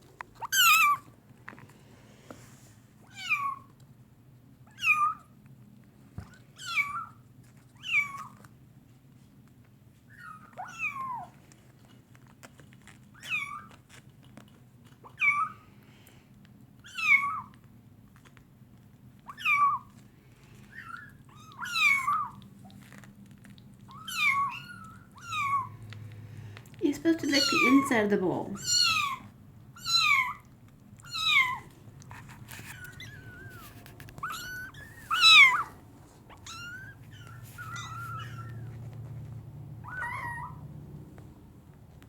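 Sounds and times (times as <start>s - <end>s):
kitten mewing: 0.4s - 1.0s, 27.3s - 28.0s, 28.6s - 38.7s.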